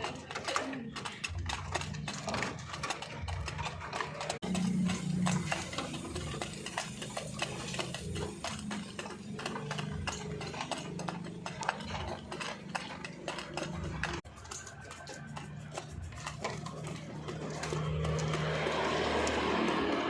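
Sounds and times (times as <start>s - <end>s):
pigeons cooing: 0.0s - 14.2s
pigeons pecking grain: 0.0s - 20.0s.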